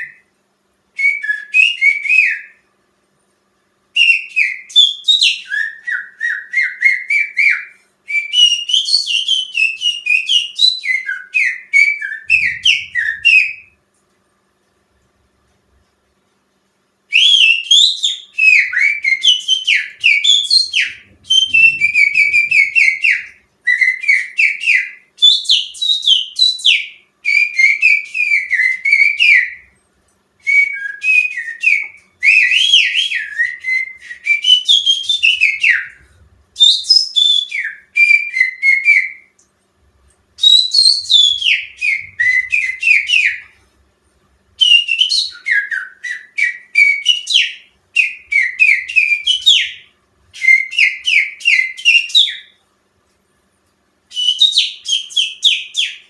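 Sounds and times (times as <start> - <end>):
person whistling through fingers: 5.2 - 13.7, 17.2 - 24.9, 30.4 - 39.3, 40.4 - 43.5.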